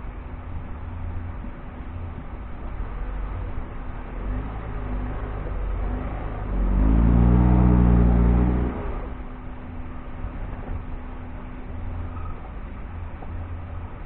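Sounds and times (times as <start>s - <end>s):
vehicle engine revving under load: 3.5s - 9.3s.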